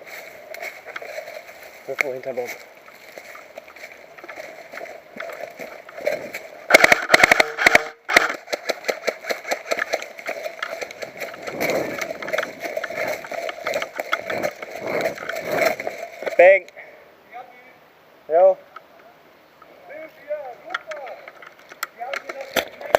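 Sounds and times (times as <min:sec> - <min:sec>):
footsteps crunching dry leaves: 0:00.0 - 0:07.3, 0:08.4 - 0:16.4.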